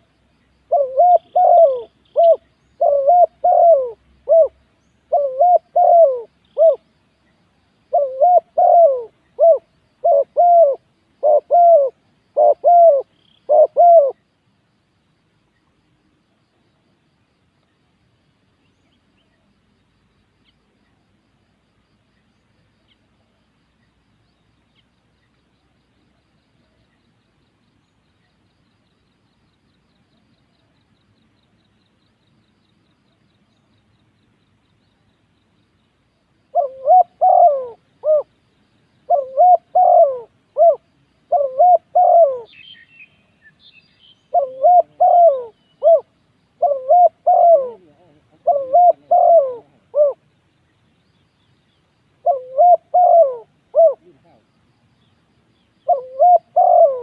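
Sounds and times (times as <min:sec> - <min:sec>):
dove cooing: 0:00.6 - 0:06.8, 0:07.9 - 0:14.2, 0:36.5 - 0:38.3, 0:39.0 - 0:42.6, 0:44.3 - 0:50.2, 0:52.2 - 0:54.4, 0:55.8 - 0:57.0.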